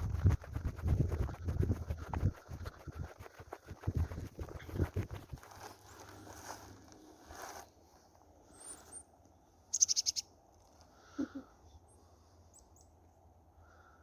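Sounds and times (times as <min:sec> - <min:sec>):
songbirds chirping: 0:05.7 - 0:14.0.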